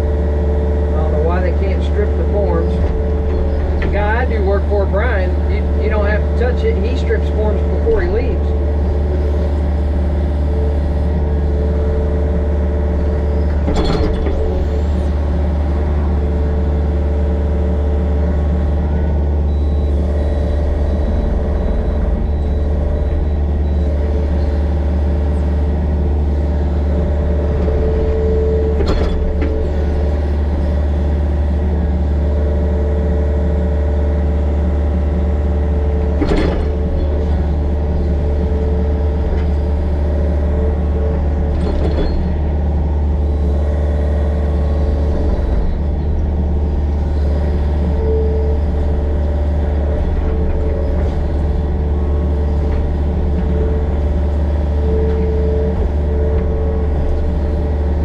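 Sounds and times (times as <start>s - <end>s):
excavator diesel engine droning: 0.0s - 58.0s.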